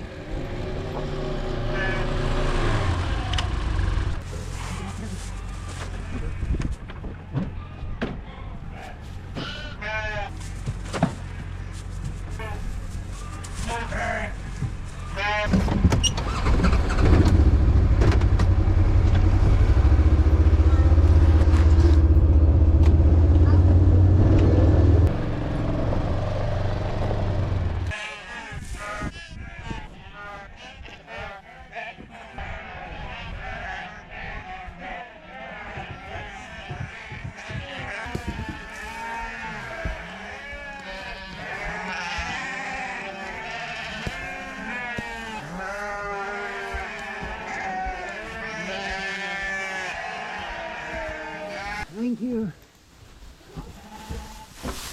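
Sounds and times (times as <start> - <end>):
engine rumbling: 0.0 - 28.0
sheep bleating: 1.7 - 2.1, 8.8 - 10.3, 13.7 - 14.4, 15.0 - 15.6, 27.9 - 52.0.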